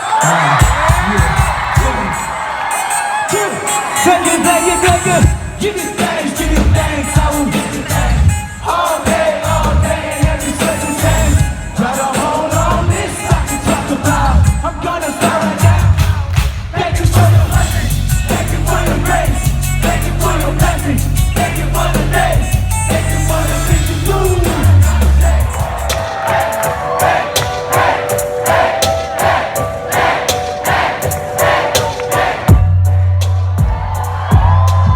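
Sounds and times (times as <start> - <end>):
crowd singing along: 0.0 - 34.4
live rock band playing: 3.6 - 34.9
heavy sustained bass: 17.3 - 25.9.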